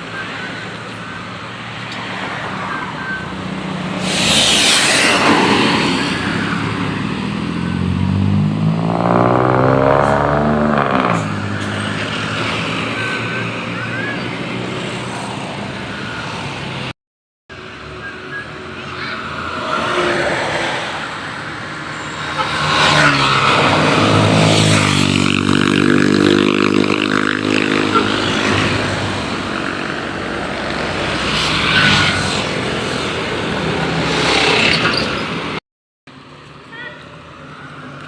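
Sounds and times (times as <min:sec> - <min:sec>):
people's voices: 0:00.0 - 0:04.4, 0:08.8 - 0:16.7, 0:17.8 - 0:21.7
bus engine accelerating: 0:00.1 - 0:16.9, 0:26.9 - 0:35.6.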